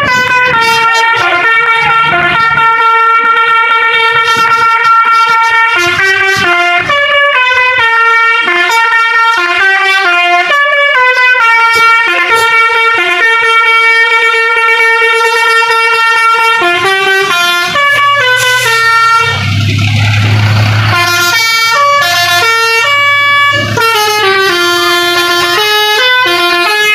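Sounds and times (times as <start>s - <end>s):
multi-tone bus air horns: 0.0s - 26.9s
low rumble: 17.8s - 23.8s.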